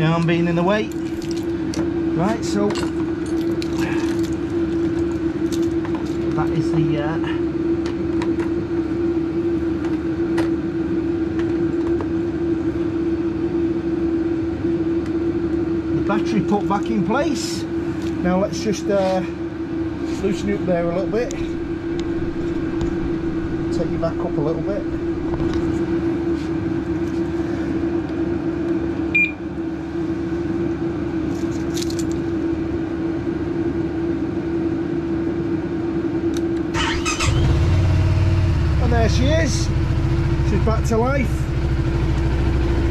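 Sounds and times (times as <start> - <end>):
machine hum with low rumble: 0.0 - 42.9
scooter engine cranking: 36.8 - 37.6
scooter engine idling: 36.8 - 42.9.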